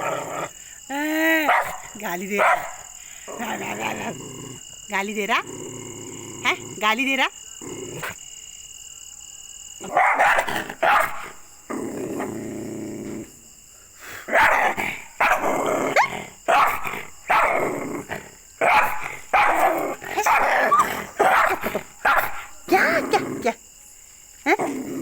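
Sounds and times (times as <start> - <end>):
dog barking angrily: 0.0 - 0.5, 1.5 - 4.6, 9.8 - 12.6, 14.2 - 23.6
dog growling: 0.0 - 0.8, 1.5 - 7.0, 7.6 - 8.2, 9.8 - 23.6, 24.5 - 25.0.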